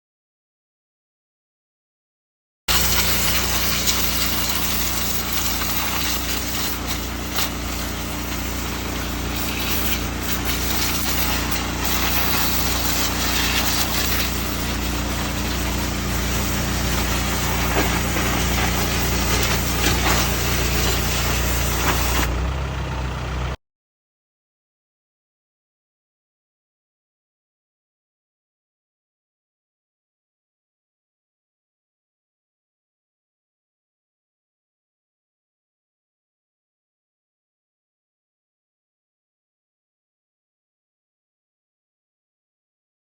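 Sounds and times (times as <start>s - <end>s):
engine running steadily: 2.7s - 23.6s.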